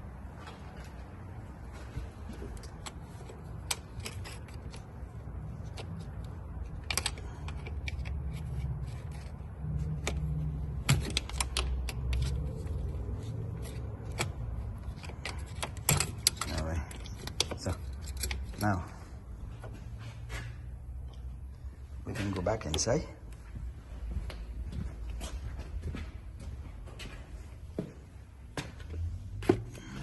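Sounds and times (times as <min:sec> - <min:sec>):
hands clicking and clattering on car: 0:02.3 - 0:18.6.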